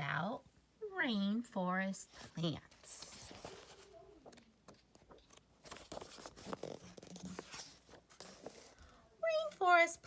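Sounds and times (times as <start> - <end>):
book pages rustling and turning: 2.1 - 9.7.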